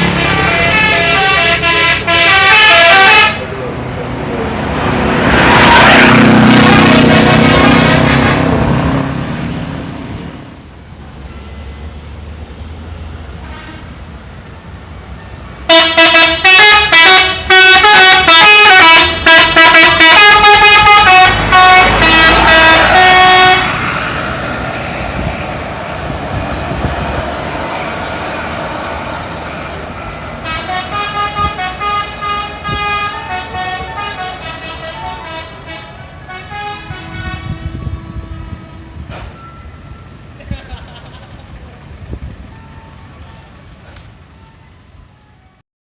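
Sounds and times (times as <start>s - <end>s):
multi-tone bus horn melody: 0.0s - 3.5s, 5.1s - 9.2s, 13.4s - 14.0s, 15.6s - 24.2s, 30.4s - 40.1s
bus engine: 0.0s - 45.6s.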